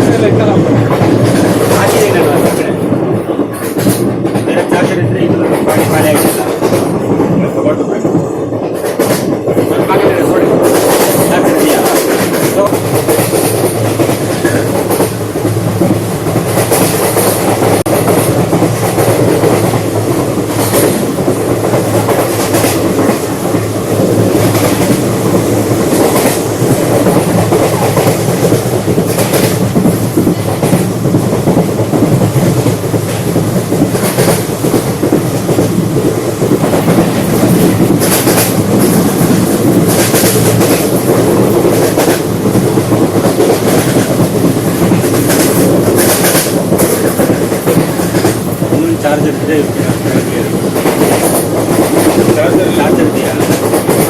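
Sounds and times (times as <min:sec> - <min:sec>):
train wheels rumbling on rails: 0:00.0 - 0:54.0
clicks and knocks from track: 0:03.4 - 0:07.3.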